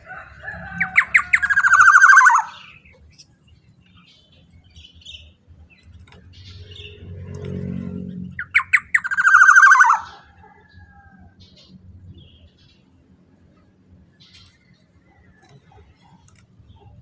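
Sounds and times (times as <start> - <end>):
oriole calling with sharp notes: 0.7 - 3.0, 8.3 - 10.5
low rumble: 5.7 - 8.6.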